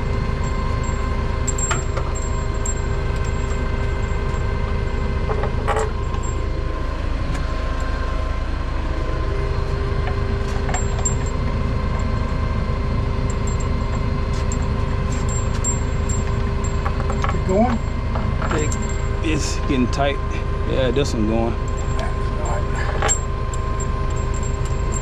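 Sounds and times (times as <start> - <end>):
diesel engine idling: 0.0 - 25.0
metal tools clinking: 5.3 - 6.4, 10.4 - 11.4, 13.3 - 19.1, 21.6 - 25.0.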